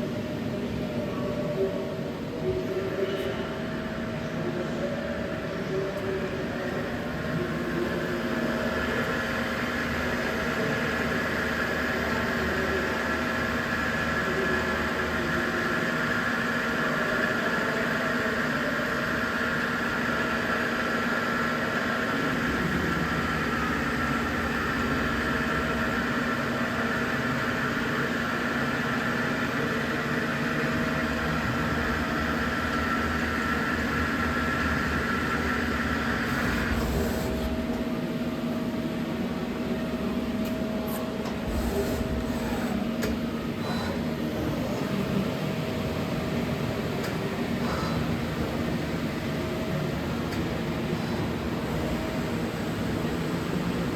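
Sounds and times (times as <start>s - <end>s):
high machine whine: 0.0s - 53.9s
lathe machine hum: 6.2s - 53.9s.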